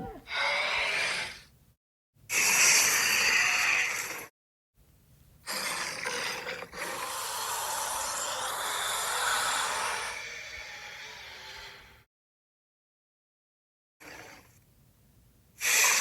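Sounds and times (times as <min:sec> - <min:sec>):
harsh grinding creature call: 0:00.0 - 0:01.4, 0:05.5 - 0:11.9.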